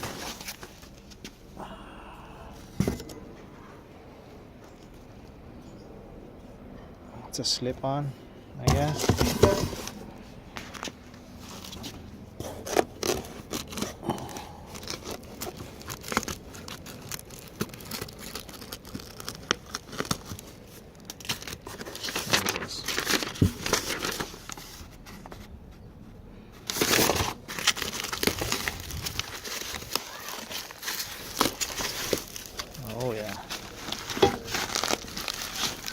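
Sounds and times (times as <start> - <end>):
packing material crinkling and tearing: 0.0 - 1.3, 8.8 - 25.4, 26.5 - 35.9
rustling: 0.0 - 1.5, 8.7 - 35.9.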